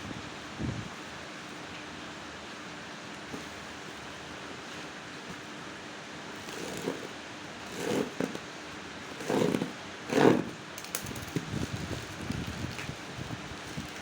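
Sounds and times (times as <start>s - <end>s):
packaging rustling and scraping: 6.4s - 8.5s, 9.1s - 14.0s.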